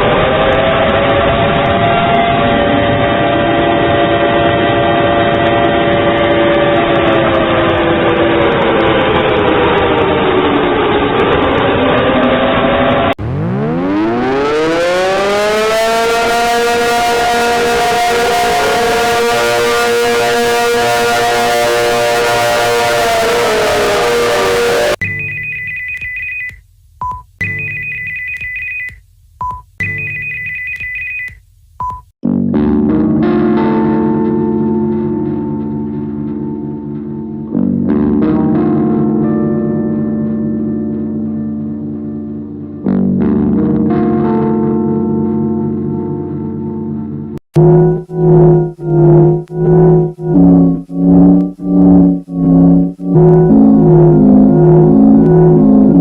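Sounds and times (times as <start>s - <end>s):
harsh distorted alarm tones: 0.0s - 26.6s, 47.5s - 56.0s
guitar music: 13.2s - 25.7s, 27.4s - 28.1s, 29.8s - 30.3s, 32.2s - 56.0s
short lower beep: 25.0s - 32.0s, 47.6s - 56.0s.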